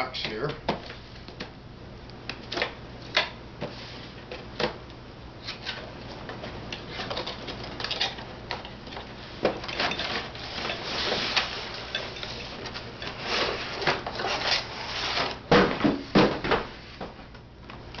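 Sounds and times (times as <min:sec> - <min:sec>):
cardboard box scraping: 0:13.2 - 0:15.4.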